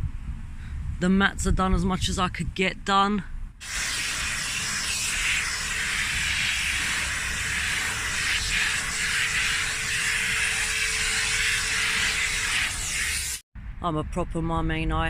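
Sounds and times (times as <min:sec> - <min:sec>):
vacuum cleaner air hiss: 0:03.6 - 0:13.4
vacuum motor whine: 0:03.6 - 0:13.4.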